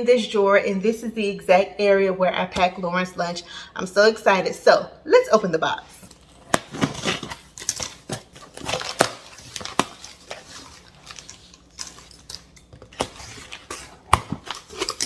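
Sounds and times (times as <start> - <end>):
crinkling tape and wrapping: 6.0 - 15.0.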